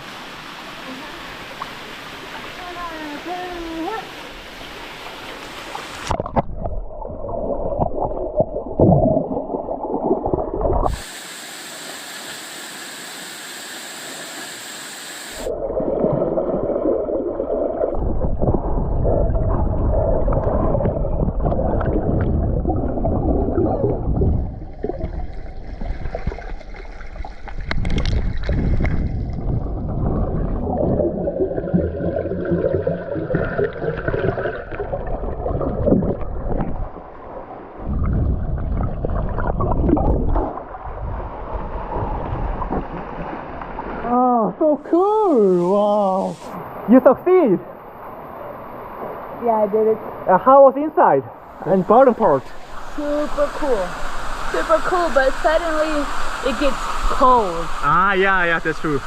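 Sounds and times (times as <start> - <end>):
stream hissing: 0.0 - 6.2, 10.8 - 15.6, 43.0 - 59.0
muffled underwater water rushing: 0.0 - 44.2, 45.0 - 59.0.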